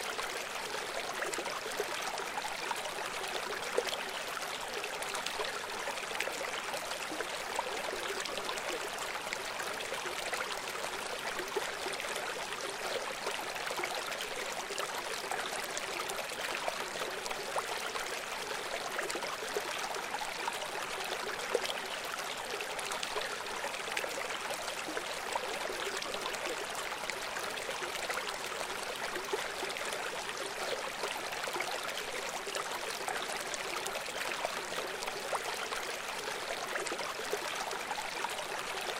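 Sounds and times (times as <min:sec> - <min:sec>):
river water flowing: 0:00.0 - 0:38.9.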